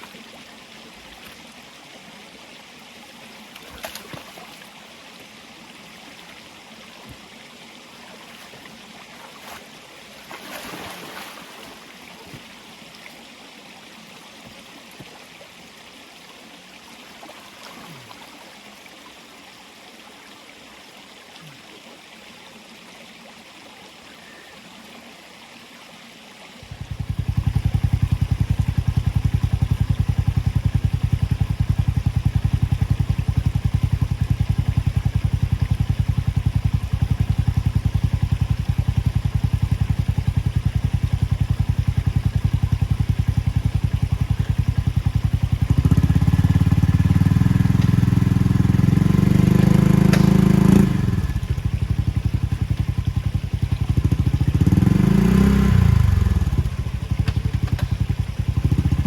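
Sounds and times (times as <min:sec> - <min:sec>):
vehicle engine running: 0:26.7 - 0:59.0.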